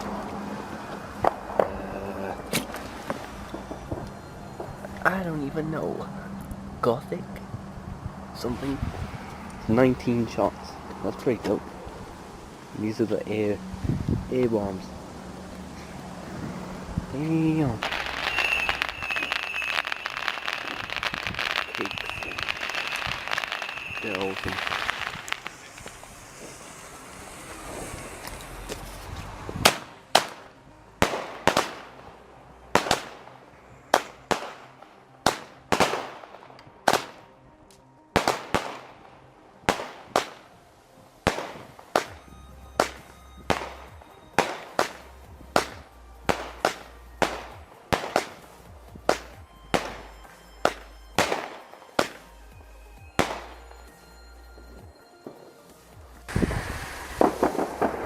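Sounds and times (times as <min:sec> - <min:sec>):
firework bangs with echo: 0:17.8 - 0:26.6, 0:31.0 - 0:31.9, 0:32.8 - 0:33.2, 0:33.9 - 0:37.2, 0:38.2 - 0:39.0, 0:39.7 - 0:40.5, 0:41.3 - 0:45.0, 0:45.6 - 0:50.0, 0:50.6 - 0:52.3, 0:53.2 - 0:53.5, 0:56.3 - 0:58.0.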